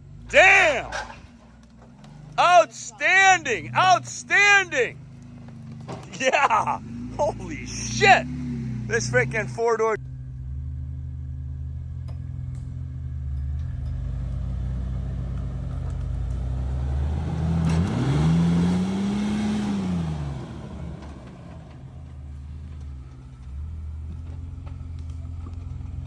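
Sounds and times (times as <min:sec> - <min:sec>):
engine running and revving: 0:04.9 - 0:06.1, 0:06.8 - 0:09.4, 0:10.0 - 0:26.0.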